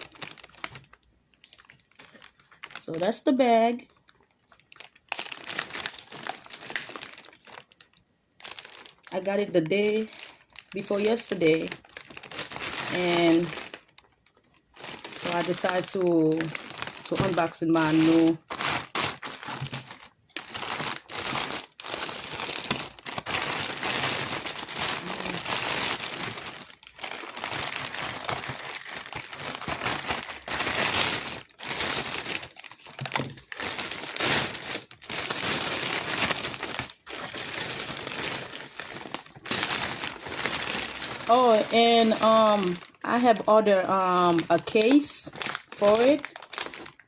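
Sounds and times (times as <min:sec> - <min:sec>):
packaging crinkling: 0:00.0 - 0:03.2, 0:03.9 - 0:47.0.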